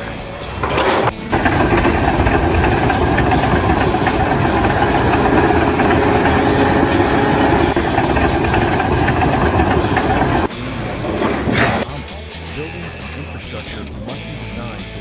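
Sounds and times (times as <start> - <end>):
large engine running loudly: 0.2 - 15.0.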